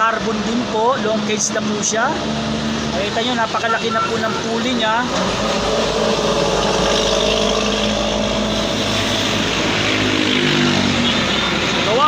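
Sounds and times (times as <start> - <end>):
vehicle engine running: 4.8 - 10.5.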